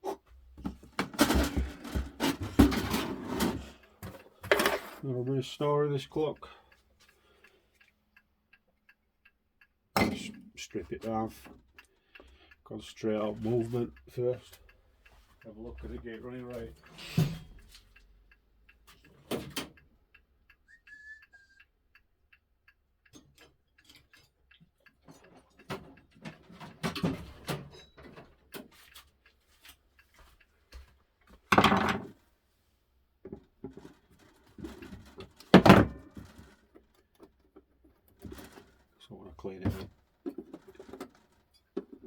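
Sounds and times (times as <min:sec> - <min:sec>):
clock handling clicks and knocks: 0:00.7 - 0:05.4, 0:09.9 - 0:14.6, 0:18.8 - 0:19.9, 0:23.0 - 0:29.0, 0:29.6 - 0:32.2.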